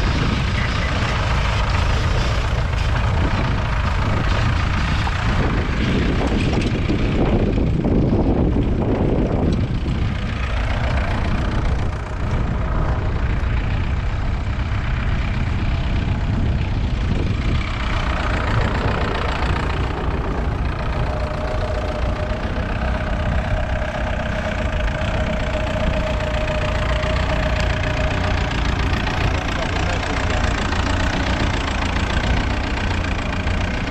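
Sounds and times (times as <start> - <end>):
diesel engine running: 0.0 - 33.9
mid-pitched whine: 9.9 - 33.9.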